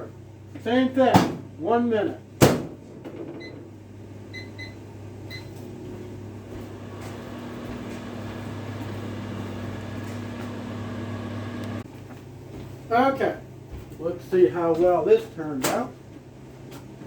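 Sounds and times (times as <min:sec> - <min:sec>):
microwave oven humming: 0:02.2 - 0:13.8
microwave keypad beeps: 0:04.3 - 0:05.5.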